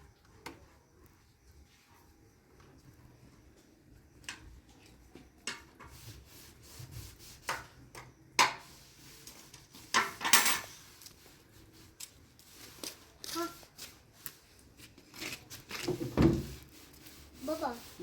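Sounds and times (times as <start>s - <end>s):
rubbing and scraping: 5.5s - 18.0s.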